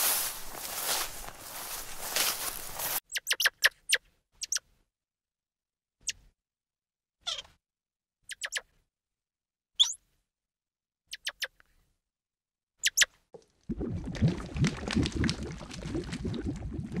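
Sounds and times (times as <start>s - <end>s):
small animal squeaking: 3.1s - 4.7s, 7.2s - 7.6s, 8.2s - 8.7s, 9.8s - 10.0s, 11.1s - 11.6s, 12.8s - 13.1s.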